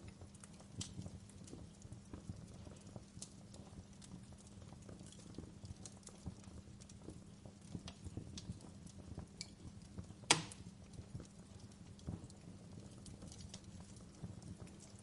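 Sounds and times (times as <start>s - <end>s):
campfire crackling: 0.0s - 15.0s
low rumble of flames: 0.0s - 15.0s
loud sharp snap of wood: 10.3s - 10.6s.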